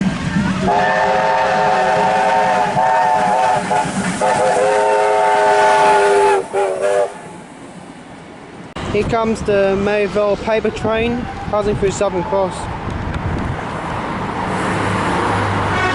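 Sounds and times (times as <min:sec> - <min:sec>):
locomotive air horn chord: 0:00.6 - 0:07.4.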